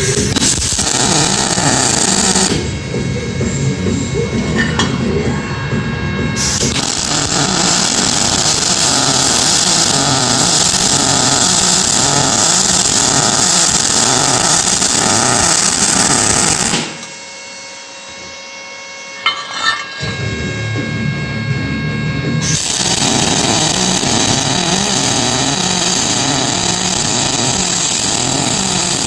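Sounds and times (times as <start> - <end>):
welding arc frying hiss: 0.0 - 4.0, 6.4 - 17.1, 22.4 - 29.0
low hum: 0.0 - 13.3, 17.0 - 28.8.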